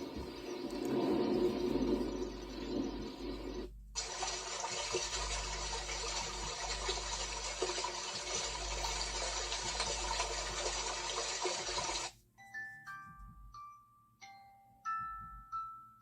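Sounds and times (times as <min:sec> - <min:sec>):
bright hiss from speaker: 0:00.0 - 0:12.1
speaker playing rushing water noise: 0:00.0 - 0:12.1.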